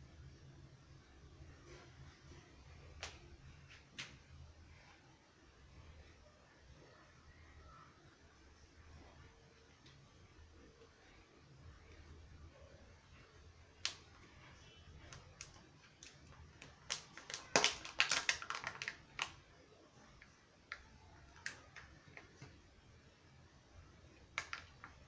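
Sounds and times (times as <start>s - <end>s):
wrapping crinkling: 15.0s - 19.4s.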